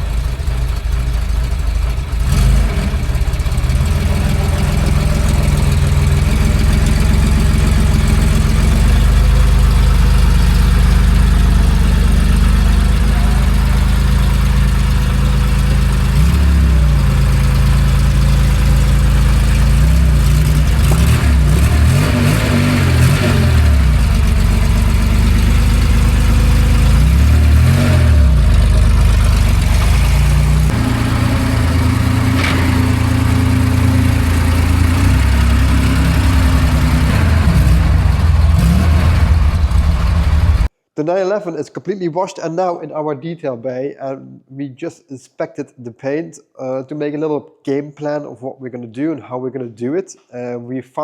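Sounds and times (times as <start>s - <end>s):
car engine idling and revving: 0.0s - 40.7s.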